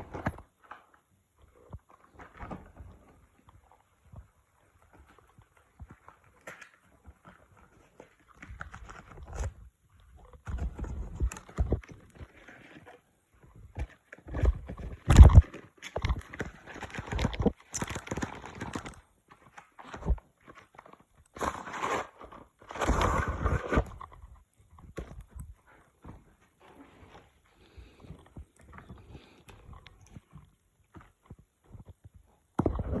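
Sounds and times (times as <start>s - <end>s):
packaging rustling: 13.8s - 31.8s.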